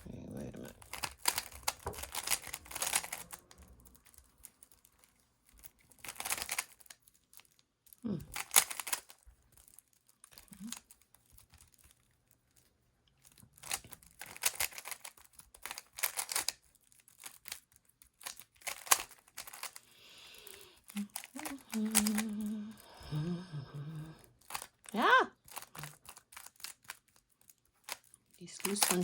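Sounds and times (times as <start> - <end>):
plastic puzzle cube clicking: 0.6 - 4.8, 5.6 - 7.5, 8.2 - 9.2, 13.2 - 22.8, 24.3 - 29.0.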